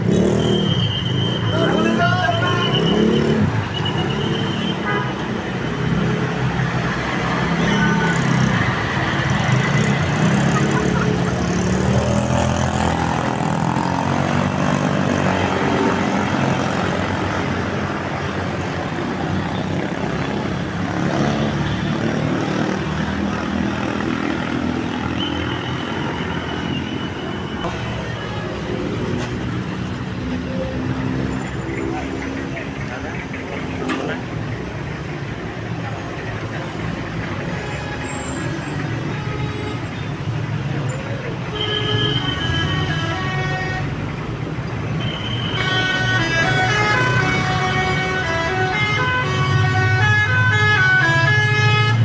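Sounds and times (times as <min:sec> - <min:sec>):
bus engine and road noise: 0:00.0 - 0:52.0
musical air horn: 0:41.6 - 0:44.0, 0:45.0 - 0:52.0.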